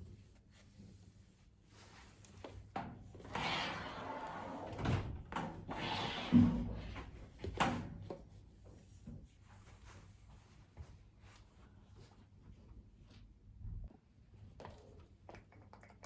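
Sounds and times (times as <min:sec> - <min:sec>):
rubbing or rustling noise: 0:08.1 - 0:13.4.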